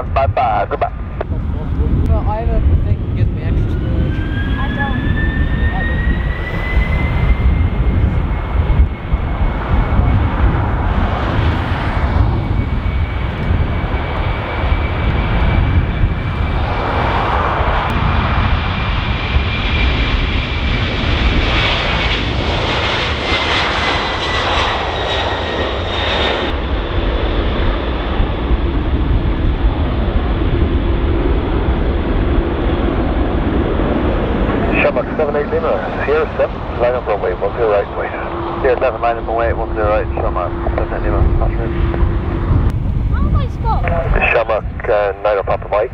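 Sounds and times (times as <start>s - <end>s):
jet engines at takeoff: 0.0s - 45.9s.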